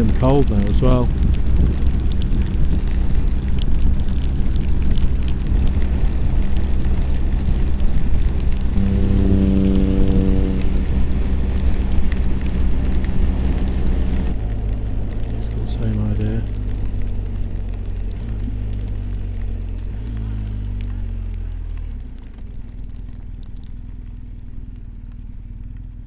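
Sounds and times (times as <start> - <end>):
motorcycle engine and road noise: 0.0 - 26.0
steady humming tone: 8.5 - 14.4.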